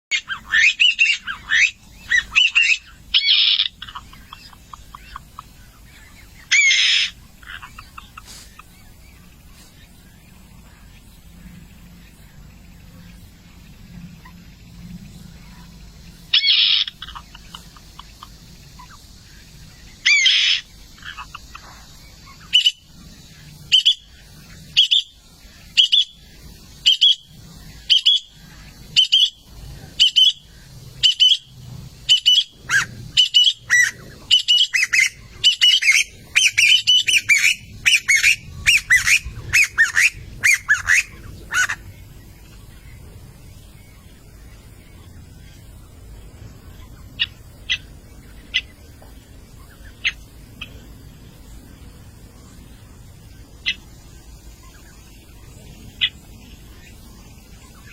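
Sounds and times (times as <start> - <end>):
short sharp bird calls: 0.1 - 10.1
birds squawking: 0.1 - 52.5.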